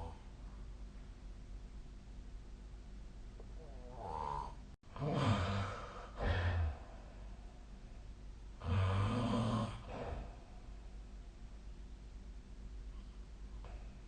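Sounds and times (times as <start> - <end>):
person snoring: 3.6 - 7.1, 8.6 - 10.4.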